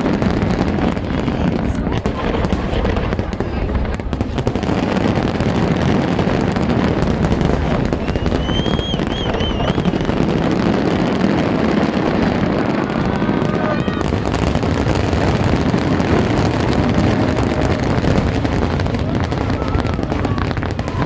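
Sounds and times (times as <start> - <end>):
fireworks crackling and popping: 0.0 - 21.0
warbling high whistle: 7.9 - 10.0.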